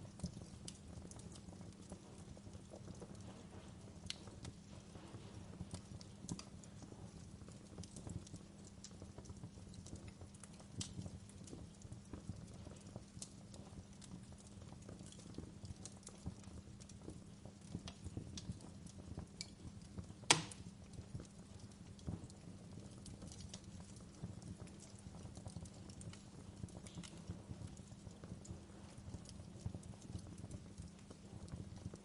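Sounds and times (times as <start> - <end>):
fire crackling: 0.0 - 32.0
low steady hum: 0.0 - 32.0
sharp loud pop: 20.3 - 20.6.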